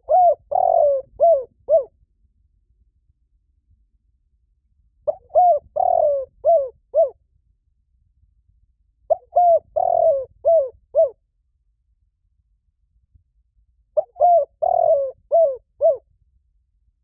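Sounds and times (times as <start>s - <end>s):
dove cooing: 0.0s - 1.9s, 5.1s - 7.2s, 9.1s - 11.2s, 14.0s - 16.0s.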